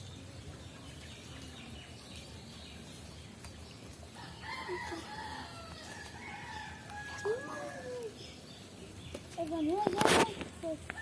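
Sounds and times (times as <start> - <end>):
rooster crowing: 4.2 - 8.2.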